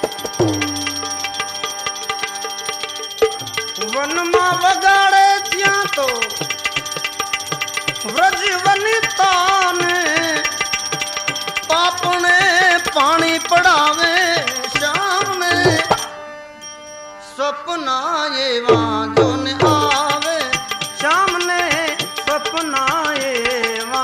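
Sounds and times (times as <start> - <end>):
tabla beat: 0.0 - 16.2, 18.6 - 24.0
ornamented melody line: 0.0 - 17.4, 18.7 - 24.0.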